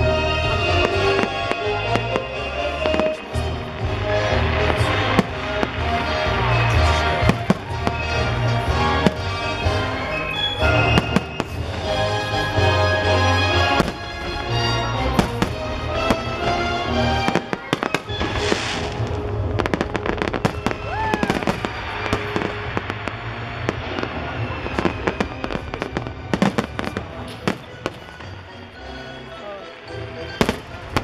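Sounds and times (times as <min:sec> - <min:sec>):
fireworks bangs and crackles: 0:00.0 - 0:31.0
show music: 0:00.0 - 0:31.0
firework hissing rush: 0:17.4 - 0:27.7.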